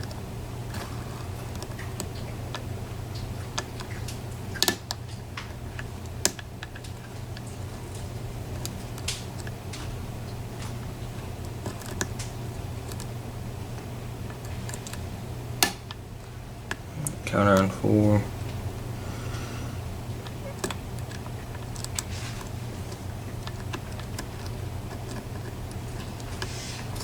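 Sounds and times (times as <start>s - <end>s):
lock pick clicking: 15.6s - 16.0s.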